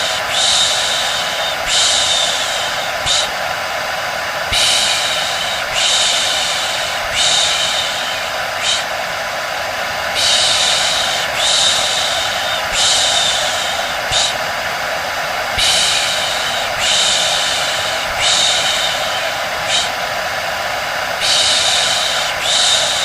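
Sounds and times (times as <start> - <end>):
hair dryer running: 0.0 - 23.0
person shushing: 15.5 - 20.1.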